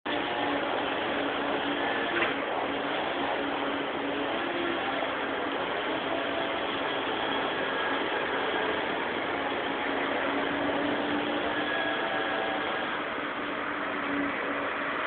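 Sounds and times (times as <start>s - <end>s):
engine-driven machinery running: 0.1s - 15.0s.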